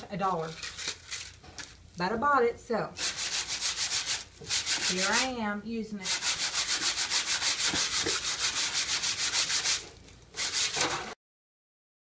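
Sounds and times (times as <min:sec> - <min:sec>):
sandpaper rubbing on wood: 0:03.0 - 0:05.4, 0:06.0 - 0:11.0.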